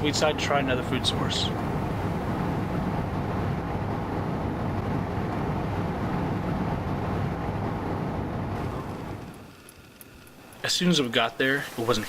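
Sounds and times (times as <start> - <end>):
vehicle driving rumble: 0.0 - 12.0.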